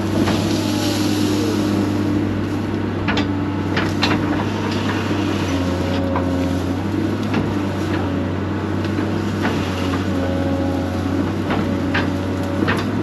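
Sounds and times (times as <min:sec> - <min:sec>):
excavator diesel engine running: 0:00.0 - 0:13.0
hydraulics whine: 0:00.0 - 0:13.0.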